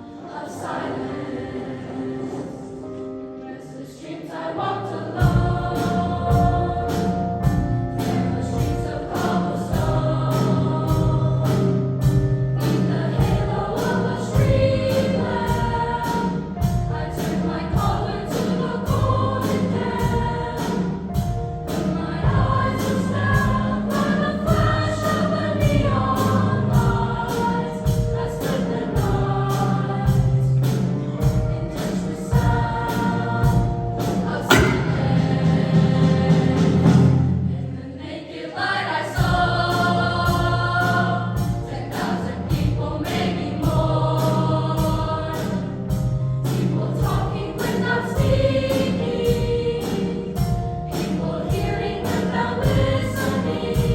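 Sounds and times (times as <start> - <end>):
girls' choir singing: 0.0 - 53.9
accompaniment with steady beat: 5.2 - 37.3.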